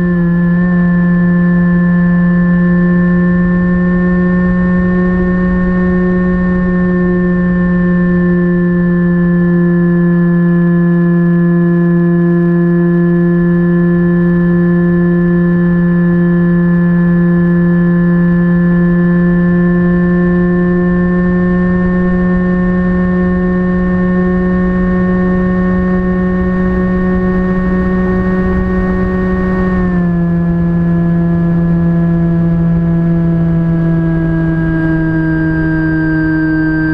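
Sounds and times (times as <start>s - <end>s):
electric motor and propeller buzzing: 17.6s - 36.9s.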